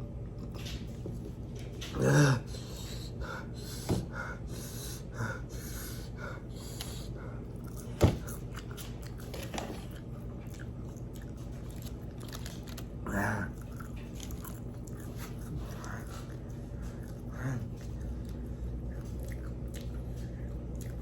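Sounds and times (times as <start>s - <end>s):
person chewing food: 6.4s - 21.0s.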